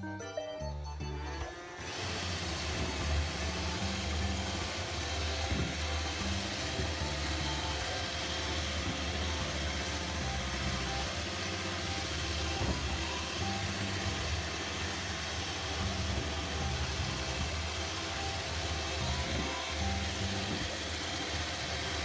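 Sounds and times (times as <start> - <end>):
robot vacuum whirring: 1.6 - 22.0.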